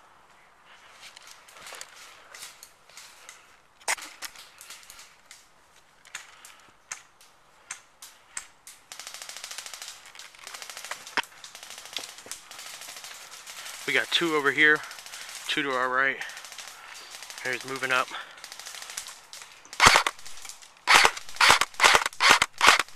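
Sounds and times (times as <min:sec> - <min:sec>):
airsoft gun full-auto burst: 0:08.9 - 0:15.6, 0:16.2 - 0:22.9
airsoft gun single shots: 0:19.8 - 0:20.1, 0:20.9 - 0:22.9.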